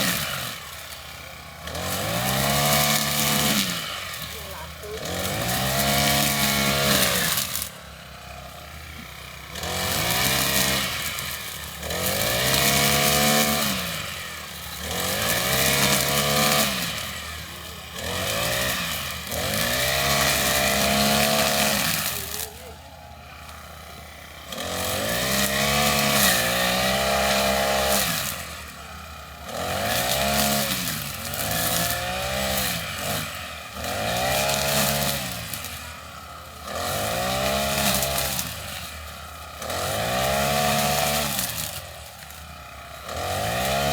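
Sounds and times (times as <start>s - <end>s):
lawnmower engine revving: 0.0s - 43.9s.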